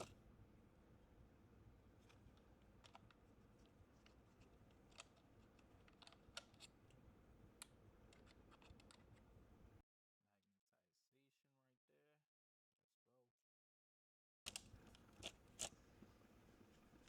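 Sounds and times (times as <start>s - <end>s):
small plastic clicks: 2.0s - 6.8s, 7.5s - 9.3s, 14.5s - 15.8s.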